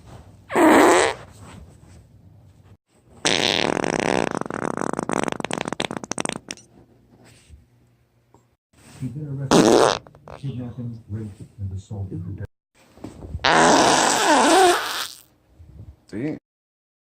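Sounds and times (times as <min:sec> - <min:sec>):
long sputtering fart: 0:00.5 - 0:01.2, 0:03.2 - 0:06.5, 0:09.5 - 0:10.4, 0:13.4 - 0:15.3
farts: 0:00.5 - 0:01.3, 0:03.2 - 0:06.6, 0:09.5 - 0:10.4, 0:13.4 - 0:15.3.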